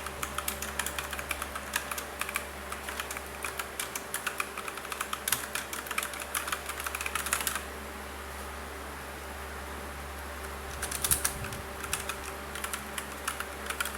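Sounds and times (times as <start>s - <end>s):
typing on mechanical keyboard: 0.0s - 7.6s, 10.7s - 13.9s.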